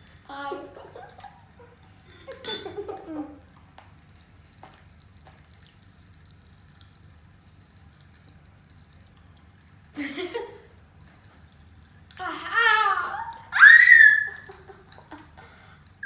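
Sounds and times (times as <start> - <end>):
person crying out: 12.2 - 14.5.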